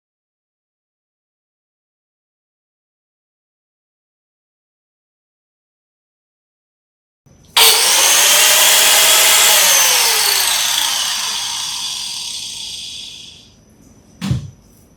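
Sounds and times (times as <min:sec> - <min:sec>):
wall chaser motor whining: 0:07.6 - 0:13.4.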